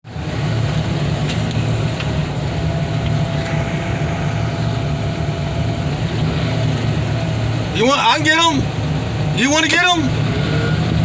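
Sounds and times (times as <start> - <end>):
large engine rumbling: 0.0 - 11.0
faint thin whine: 1.2 - 7.7.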